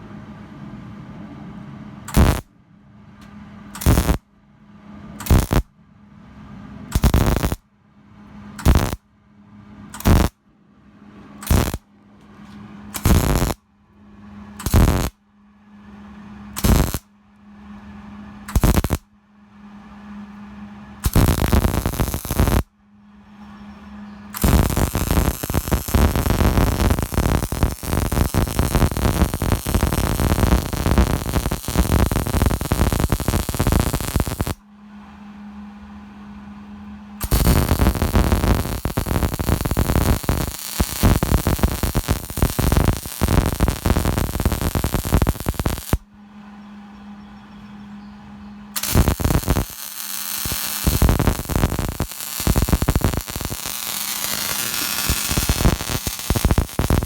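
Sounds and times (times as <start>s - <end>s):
steady low hum: 0.0s - 57.0s
welding arc crackling: 2.1s - 2.5s, 3.8s - 4.2s, 5.2s - 5.7s, 6.9s - 7.6s, 8.6s - 9.0s, 10.0s - 10.3s, 11.4s - 11.8s, 13.0s - 13.6s, 14.6s - 15.2s, 16.6s - 17.0s, 18.5s - 19.0s, 21.0s - 22.7s, 24.4s - 34.6s, 37.2s - 46.0s, 48.8s - 57.0s.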